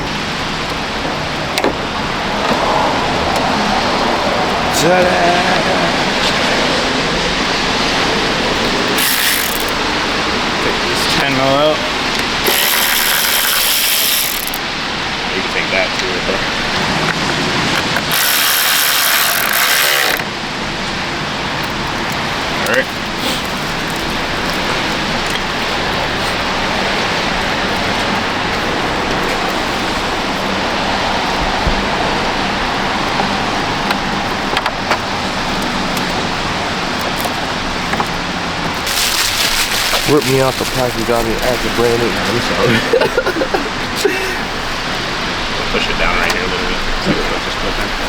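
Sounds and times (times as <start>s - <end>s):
rain rushing: 0.0s - 48.0s
ratchet wrench clicking: 8.9s - 9.8s, 12.2s - 14.6s, 18.0s - 20.2s.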